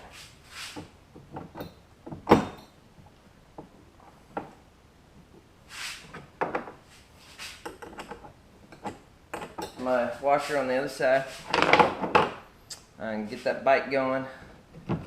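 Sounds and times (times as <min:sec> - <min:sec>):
knocks and clicks of bolts and washers: 0:00.8 - 0:02.8, 0:06.1 - 0:06.8, 0:07.6 - 0:09.9, 0:11.5 - 0:12.4.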